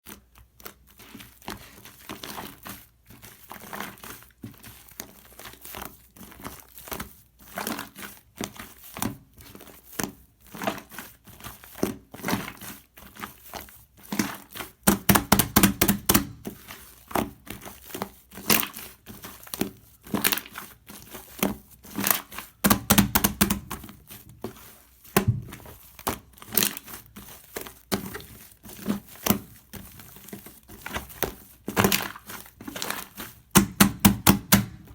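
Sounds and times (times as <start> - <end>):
slime squishing crackles and pops: 14.1 - 17.5, 22.0 - 24.1, 30.8 - 34.9.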